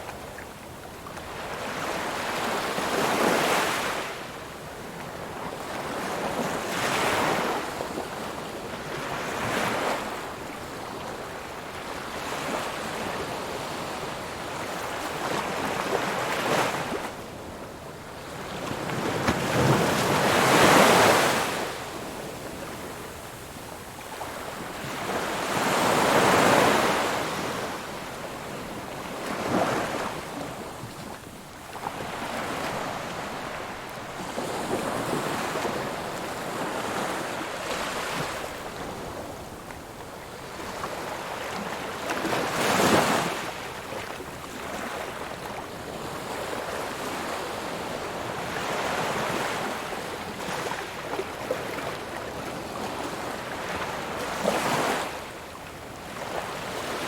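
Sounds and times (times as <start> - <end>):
ocean waves breaking on shore: 5.1 - 57.0.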